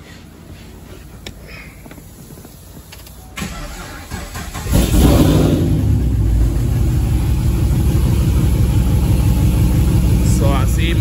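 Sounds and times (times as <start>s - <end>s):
car engine cranking and running: 3.0s - 11.0s.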